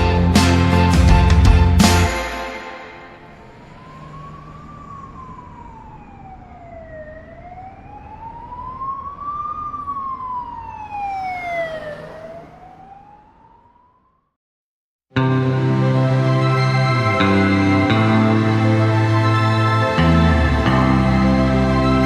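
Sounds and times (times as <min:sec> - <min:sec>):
emergency siren wailing: 0:02.6 - 0:14.4.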